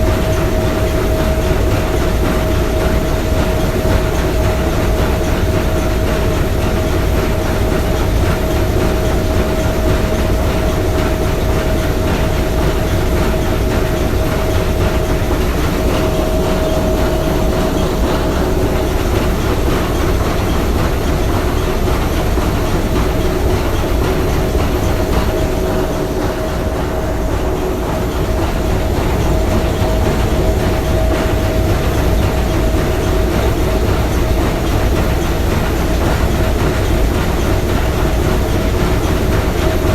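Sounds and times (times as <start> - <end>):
steam engine clatter: 0.0 - 39.9
steady tone: 13.1 - 30.9.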